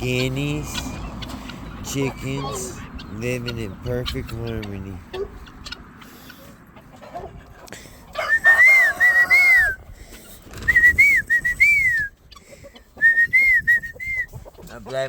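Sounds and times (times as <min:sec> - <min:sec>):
faint farmyard background: 0:00.0 - 0:15.0
whistled call: 0:08.2 - 0:09.8, 0:10.6 - 0:12.1, 0:13.0 - 0:14.3.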